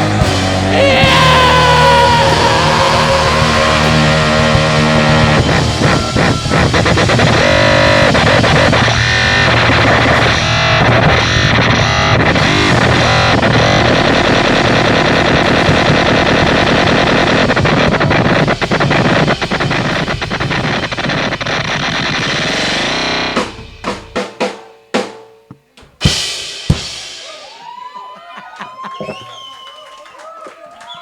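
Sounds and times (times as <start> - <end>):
live rock band playing: 0.0 - 25.1
drum roll and cymbal hits: 0.0 - 27.9.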